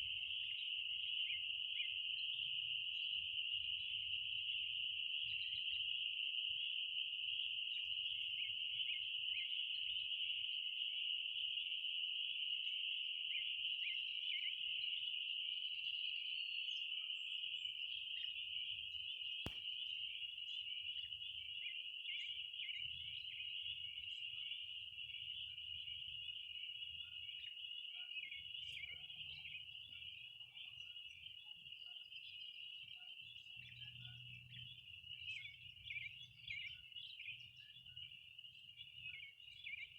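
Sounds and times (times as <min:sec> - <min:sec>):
faint bird chirps: 0:00.0 - 0:39.9
sharp click: 0:19.5 - 0:19.7.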